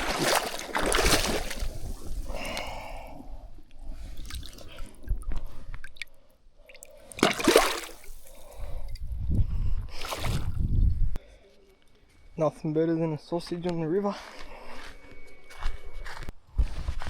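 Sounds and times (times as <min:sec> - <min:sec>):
water splashing and dripping: 0:00.0 - 0:02.5, 0:04.1 - 0:09.0.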